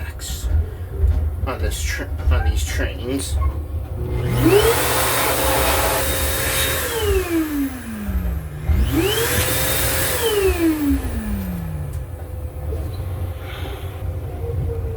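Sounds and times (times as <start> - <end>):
train rumble: 0.0 - 14.9
electric hand dryer whine: 3.7 - 14.2.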